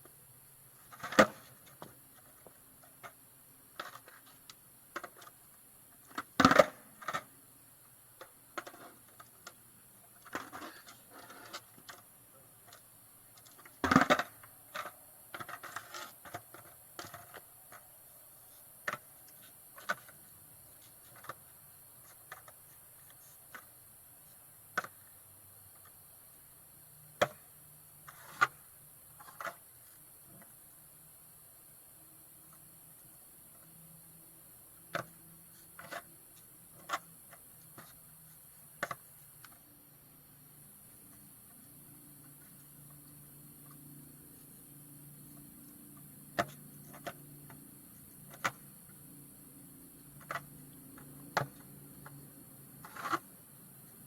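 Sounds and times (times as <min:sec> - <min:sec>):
light skateboard clicks: 0:00.8 - 0:07.4, 0:08.1 - 0:26.0, 0:27.1 - 0:30.6, 0:34.8 - 0:39.7, 0:41.0 - 0:49.2, 0:50.0 - 0:54.0
skateboard knocking on ground: 0:00.9 - 0:03.2, 0:06.1 - 0:07.3, 0:13.4 - 0:17.8, 0:18.8 - 0:19.1, 0:27.2 - 0:27.4, 0:50.2 - 0:52.2.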